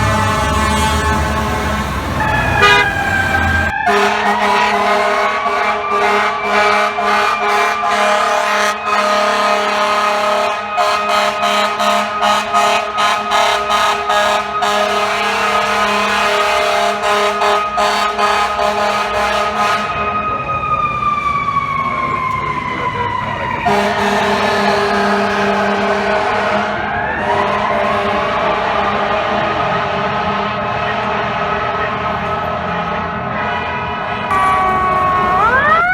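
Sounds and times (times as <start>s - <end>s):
mechanical siren wailing: 0.0s - 12.7s, 33.6s - 35.9s
air horn blasts: 0.0s - 20.0s, 23.6s - 35.5s.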